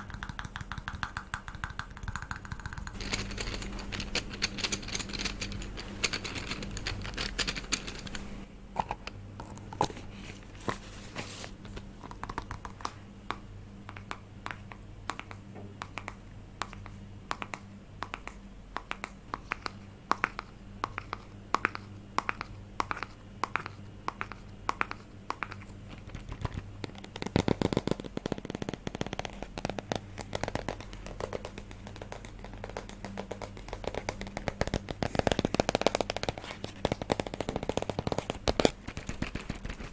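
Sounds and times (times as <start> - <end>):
crisp tapping: 0.0 - 8.5, 9.4 - 39.9
faint low hum: 0.0 - 39.9.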